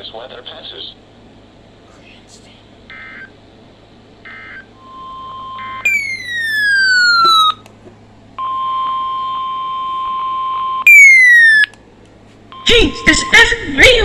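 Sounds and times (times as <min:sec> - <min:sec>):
steady electronic tone: 0:05.8 - 0:07.6
falling electronic sweeps: 0:05.9 - 0:07.6, 0:10.9 - 0:11.7.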